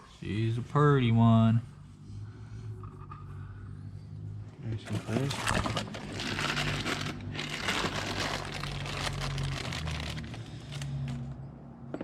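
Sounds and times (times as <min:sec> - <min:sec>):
steady low hum: 0:00.1 - 0:08.3
packaging wrap crinkling: 0:04.9 - 0:11.2.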